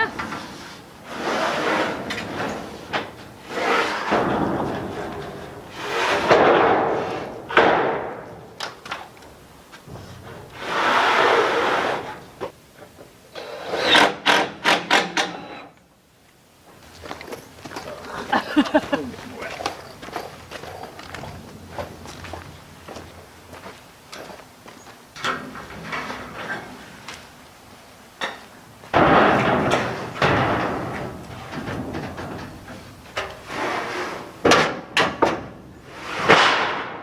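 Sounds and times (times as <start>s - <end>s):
scraping on steel roof: 0.0s - 12.5s, 13.3s - 15.8s, 28.9s - 37.0s
sharp knocks: 6.2s - 8.8s.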